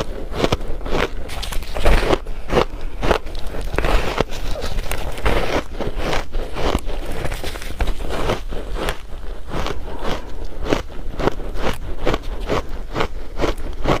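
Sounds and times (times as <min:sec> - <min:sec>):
person chewing ice: 0:00.0 - 0:14.0.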